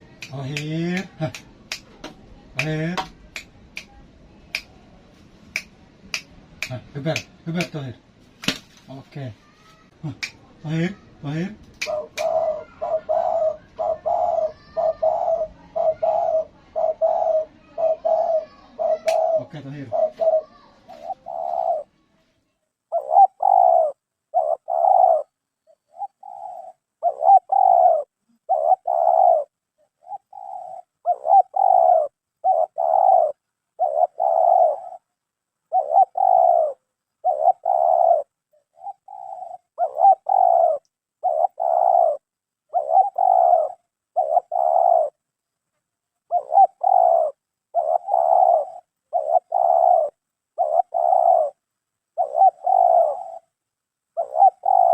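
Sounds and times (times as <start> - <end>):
dove cooing: 11.8 - 21.9, 22.9 - 35.1, 35.7 - 45.2, 46.2 - 54.9.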